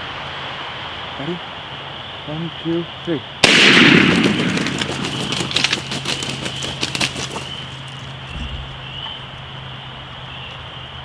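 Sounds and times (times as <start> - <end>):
shotgun blast: 3.4 - 6.7
turkey flapping in dry leaves: 3.6 - 9.4.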